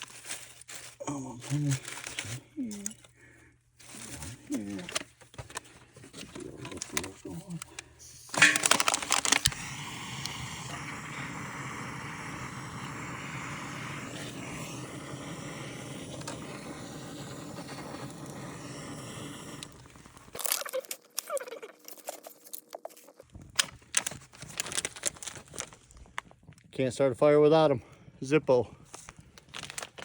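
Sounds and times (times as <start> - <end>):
tinder crackling: 6.6 - 26.4
butane torch hissing: 7.9 - 20.4
lighter clicking: 9.4 - 19.9.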